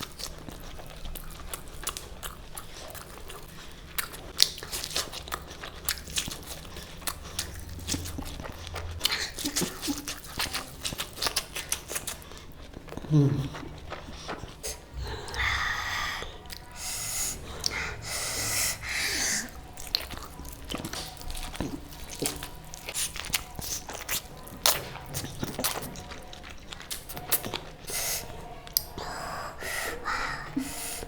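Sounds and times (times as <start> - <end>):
wet chewing and lip smacks: 0.0 - 29.2
nasal breaths and sniffs: 14.0 - 19.6, 27.8 - 31.0.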